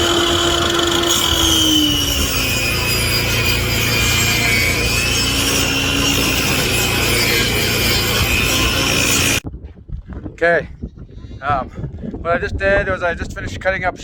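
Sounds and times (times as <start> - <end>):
table saw ripping plywood: 0.0 - 9.4.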